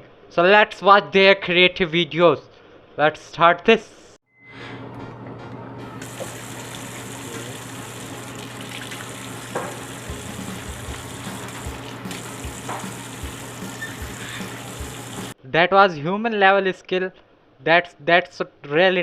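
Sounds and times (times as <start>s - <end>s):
tap water running and splashing: 6.0s - 15.4s.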